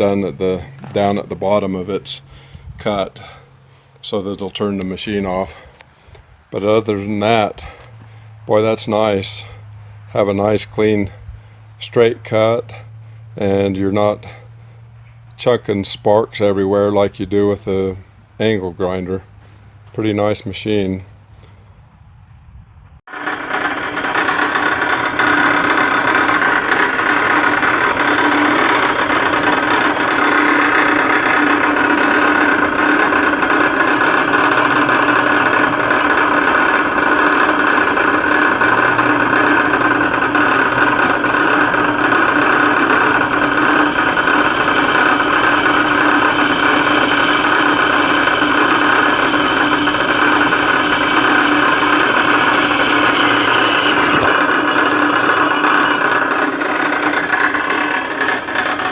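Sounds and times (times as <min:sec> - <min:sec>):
metal-cutting bandsaw whine: 0:23.1 - 0:58.9.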